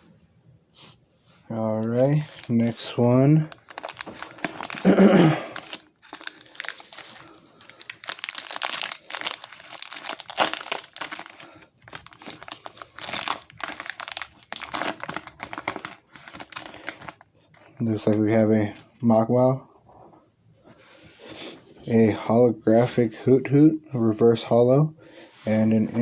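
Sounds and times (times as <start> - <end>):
foil wrapper crinkling and tearing: 1.8 - 18.9.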